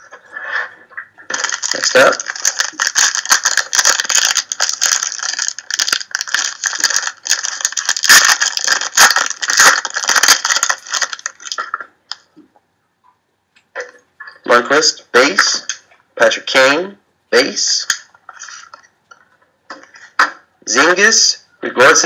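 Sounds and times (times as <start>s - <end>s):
plastic wrapper crinkling: 1.3s - 12.3s, 17.9s - 19.9s.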